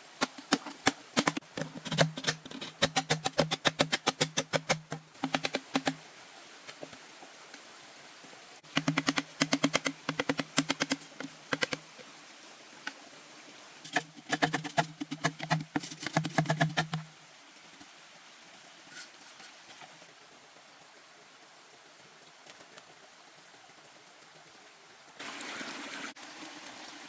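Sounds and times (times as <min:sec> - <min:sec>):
rapid knocking: 0:08.7 - 0:11.8.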